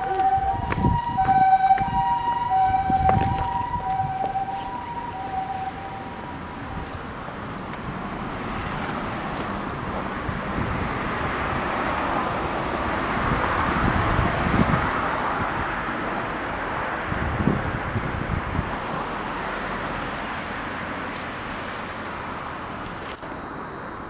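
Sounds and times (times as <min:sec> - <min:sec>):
ambulance two-tone siren: 0:00.0 - 0:07.3
car passing: 0:00.0 - 0:24.0.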